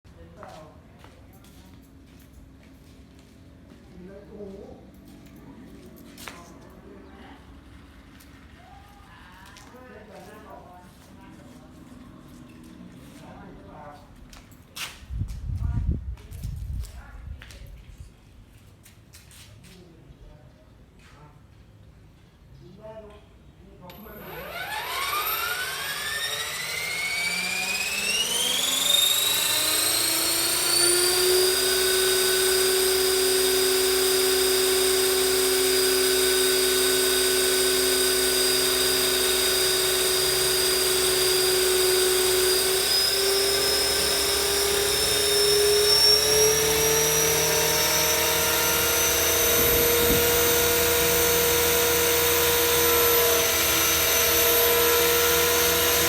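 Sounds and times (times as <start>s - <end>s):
rc helicopter motor whine: 23.9s - 56.0s
rotor hum: 23.9s - 56.0s.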